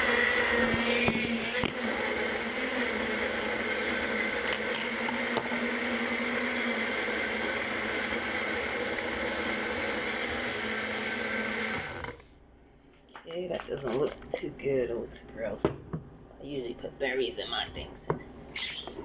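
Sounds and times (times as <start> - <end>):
blender motor whirring: 0.0 - 12.2.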